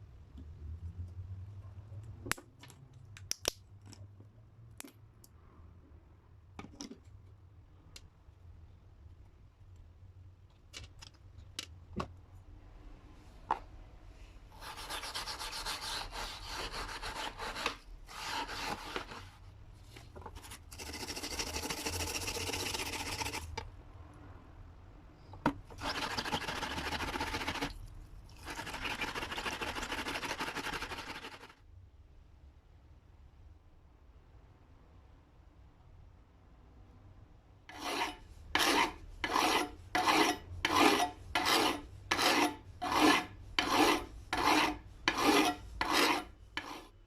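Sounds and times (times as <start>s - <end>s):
abrasive rubbing on knife: 37.7s - 46.9s.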